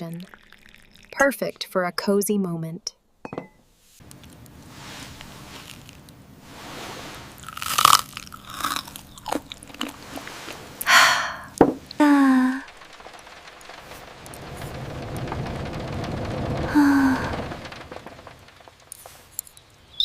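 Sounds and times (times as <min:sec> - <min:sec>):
person chewing crunchy food: 0:05.5 - 0:06.1, 0:07.3 - 0:11.6
short falling hum: 0:08.2 - 0:19.3.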